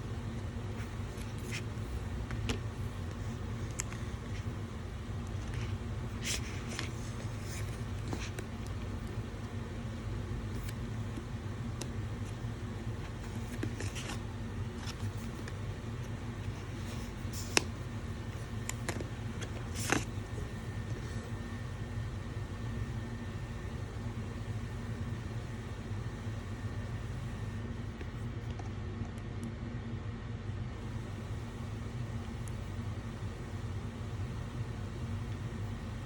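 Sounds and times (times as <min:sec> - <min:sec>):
steady low hum: 0:00.0 - 0:36.0
packaging rustling and clicking: 0:13.0 - 0:17.8, 0:18.4 - 0:20.2.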